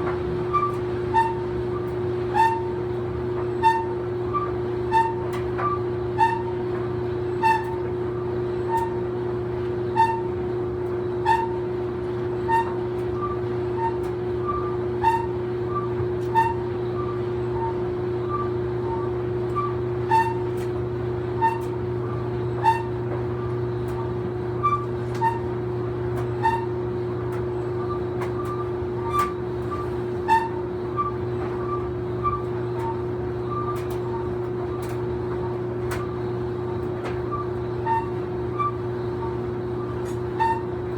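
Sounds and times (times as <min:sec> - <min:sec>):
clothes dryer humming: 0:00.0 - 0:40.9
high squeak of turning drum: 0:00.5 - 0:01.4, 0:02.3 - 0:02.7, 0:03.5 - 0:06.5, 0:07.4 - 0:07.8, 0:10.0 - 0:10.3, 0:12.5 - 0:20.4, 0:21.4 - 0:21.8, 0:22.6 - 0:23.0, 0:27.8 - 0:34.3, 0:37.3 - 0:40.8.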